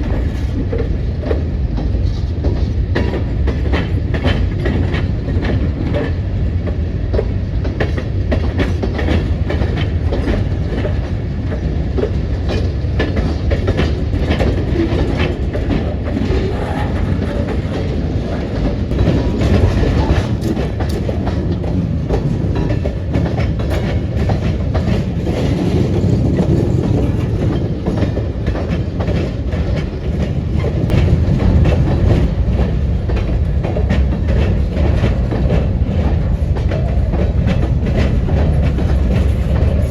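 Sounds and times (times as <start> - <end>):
freight train rumbling past: 0.0 - 39.9
wheels clicking over rail joints: 0.0 - 39.9.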